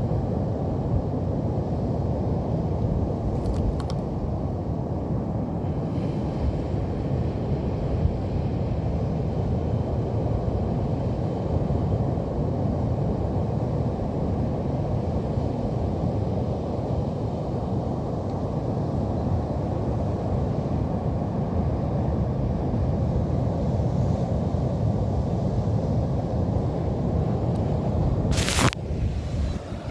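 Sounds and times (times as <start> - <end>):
wind on microphone: 0.0 - 10.8, 24.3 - 29.9
surf breaking on beach: 28.3 - 29.9.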